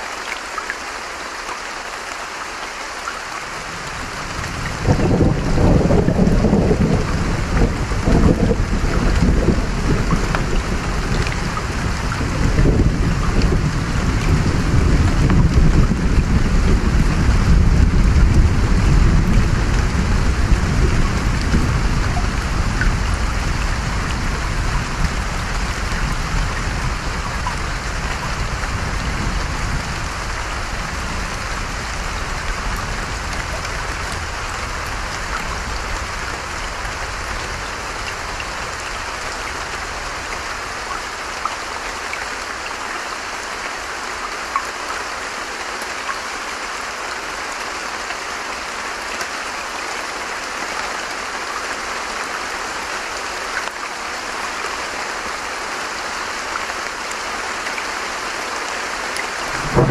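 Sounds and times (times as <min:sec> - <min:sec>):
creek water rushing: 0:00.0 - 0:59.9
rain: 0:00.0 - 0:59.9
distant thunder rumble: 0:04.1 - 0:38.0, 0:59.4 - 0:59.9.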